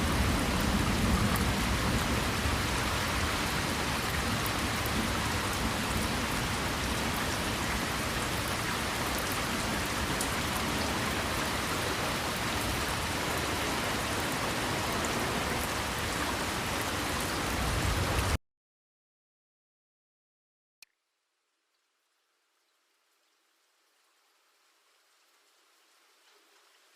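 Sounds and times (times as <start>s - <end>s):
heavy rain on a car: 0.0s - 18.4s.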